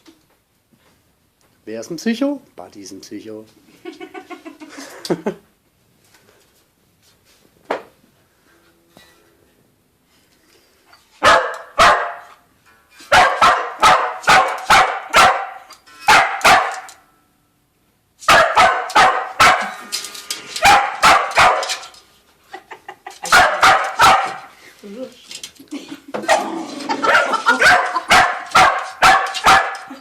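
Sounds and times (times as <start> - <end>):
dog barking excitedly: 11.2 - 12.4, 13.1 - 17.0, 18.2 - 19.8, 20.6 - 22.0, 23.2 - 24.6, 26.3 - 30.0.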